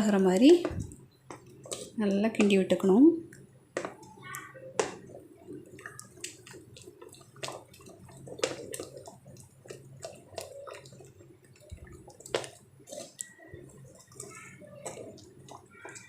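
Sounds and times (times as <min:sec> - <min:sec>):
ladle stirring thick batter: 0:00.0 - 0:16.0.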